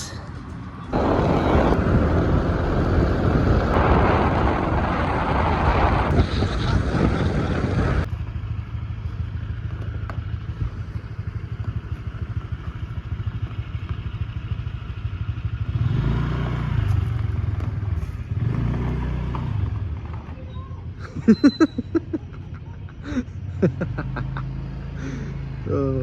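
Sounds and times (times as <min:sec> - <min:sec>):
scooter engine running: 0:00.8 - 0:20.9.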